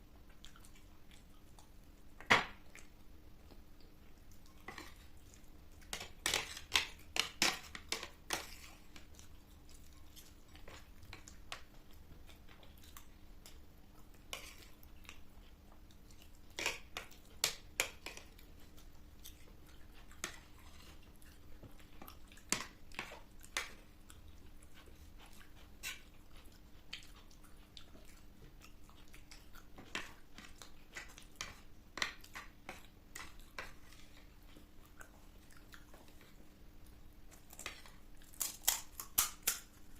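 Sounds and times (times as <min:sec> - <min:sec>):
faint steady hum: 0:00.0 - 0:39.9
crunching and chewing crisp shells: 0:03.5 - 0:39.9.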